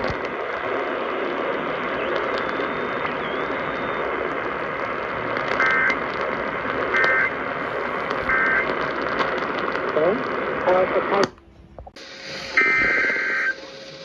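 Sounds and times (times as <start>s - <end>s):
radio static: 0.0s - 14.0s
two-tone warbling data bursts: 12.2s - 13.7s.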